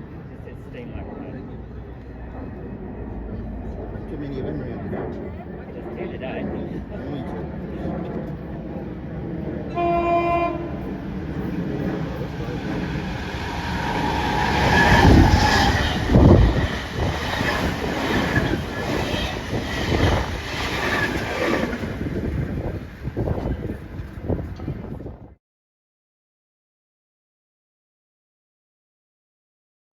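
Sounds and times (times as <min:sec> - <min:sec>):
train horn blast: 0:09.7 - 0:11.0
train wheels clacking: 0:10.8 - 0:22.1.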